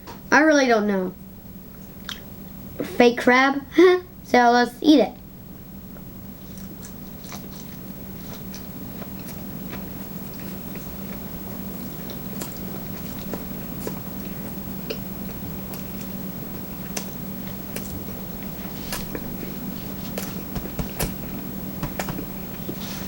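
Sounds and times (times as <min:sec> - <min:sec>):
steady low hum: 0:00.0 - 0:23.0
person chewing food: 0:06.3 - 0:23.0.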